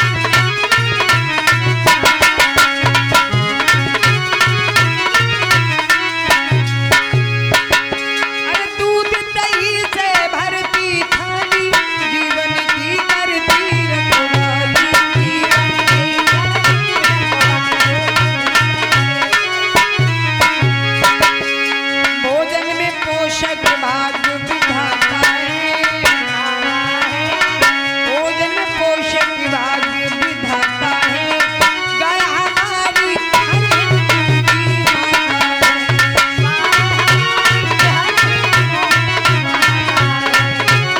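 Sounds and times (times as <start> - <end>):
hand drum rhythm: 0.0 - 21.6, 30.2 - 40.9
gliding melody line: 30.3 - 40.9.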